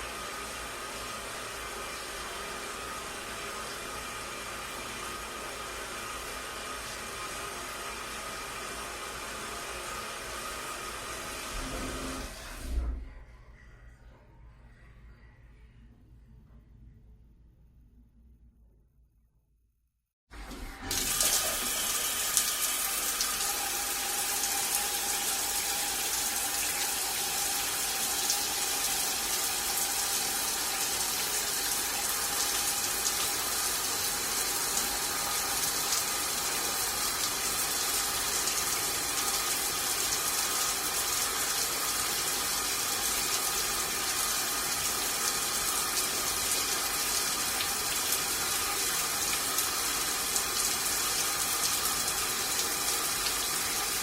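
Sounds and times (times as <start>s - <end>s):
running water rushing: 20.5s - 54.0s.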